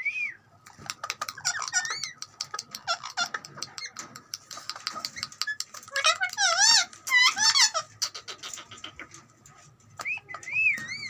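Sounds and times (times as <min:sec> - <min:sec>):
parrot chirping and clicking: 0:00.6 - 0:09.2.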